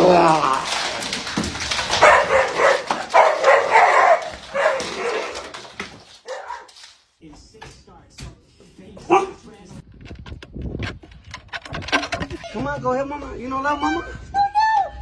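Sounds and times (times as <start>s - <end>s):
dog howling: 1.9s - 6.7s.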